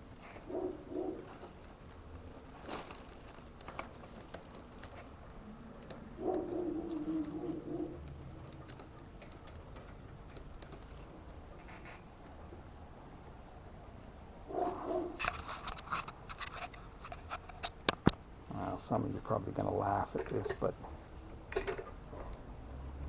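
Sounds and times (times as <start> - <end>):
metallic clicks and rattles of tools: 0.2 - 12.4, 14.6 - 18.2, 21.5 - 22.4.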